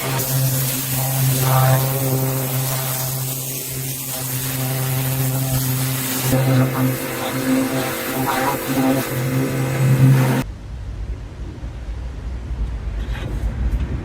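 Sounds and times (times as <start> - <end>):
diesel engine running: 4.2 - 10.4.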